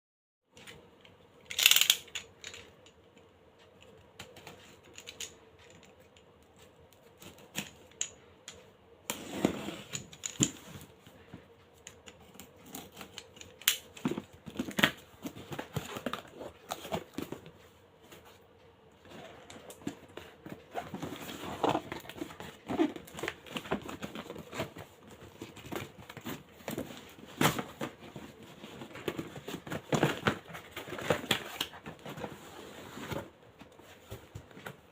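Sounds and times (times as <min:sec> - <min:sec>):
plastic and cardboard crinkling: 0:19.1 - 0:34.9.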